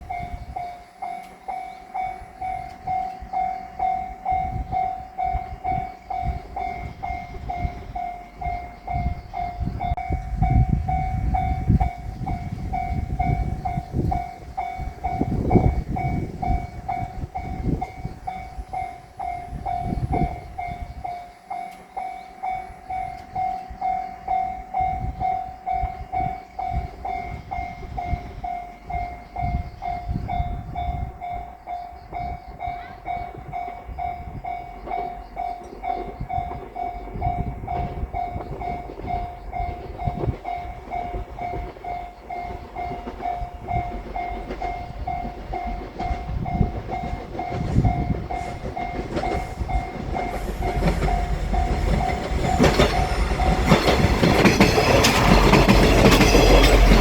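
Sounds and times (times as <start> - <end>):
level-crossing bell dinging: 0.0 - 57.0
train passing rumble: 0.0 - 57.0
wheels knocking on rail joints: 0.0 - 57.0.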